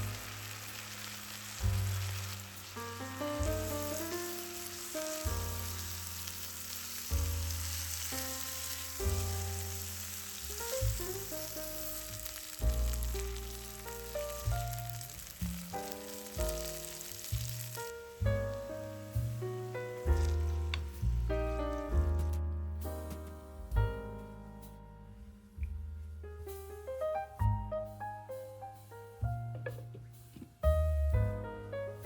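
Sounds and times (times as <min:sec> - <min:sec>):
food sizzling in a skillet: 0:00.0 - 0:21.9
background music with bass line: 0:00.0 - 0:32.0.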